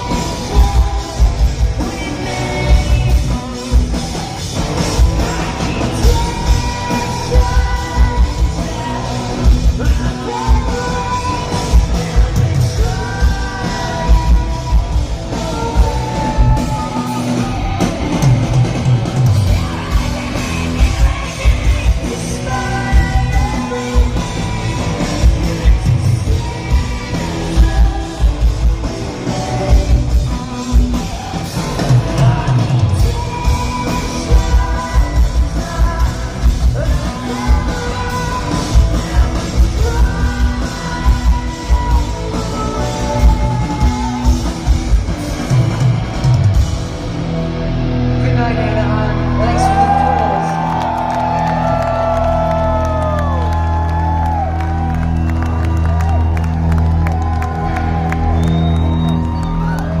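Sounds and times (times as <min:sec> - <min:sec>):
singer yelling vocals: 0:00.0 - 0:18.5, 0:48.1 - 0:53.4
live rock band: 0:00.0 - 1:00.0.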